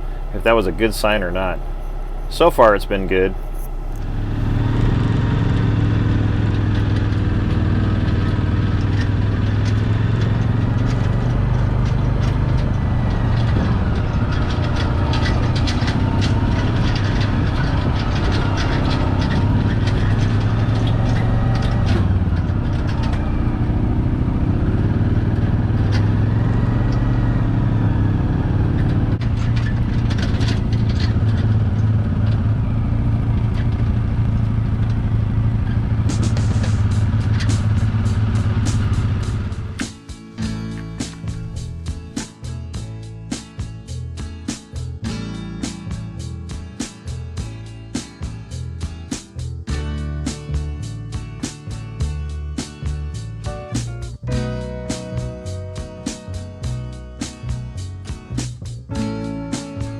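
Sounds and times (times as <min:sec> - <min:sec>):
small gas engine running: 0:00.0 - 0:42.2.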